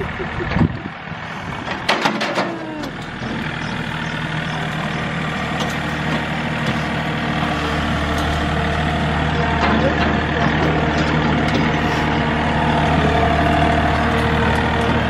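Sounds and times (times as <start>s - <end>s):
farm machinery engine running: 0.0s - 15.0s
sharp clicks and knocks: 1.6s - 3.2s.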